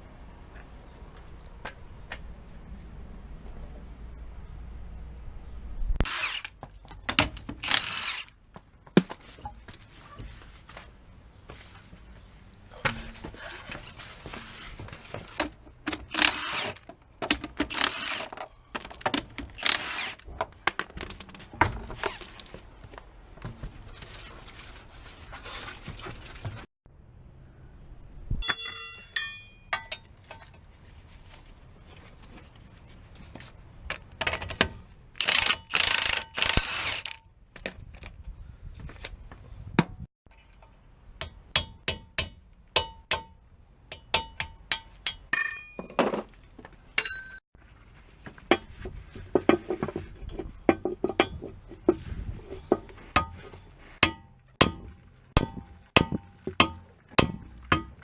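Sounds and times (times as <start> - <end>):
metal hand tools clicking and clinking: 28.4 - 30.5.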